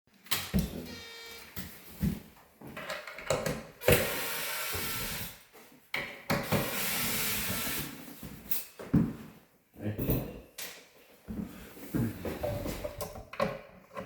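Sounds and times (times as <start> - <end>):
power drill running: 3.8 - 5.4.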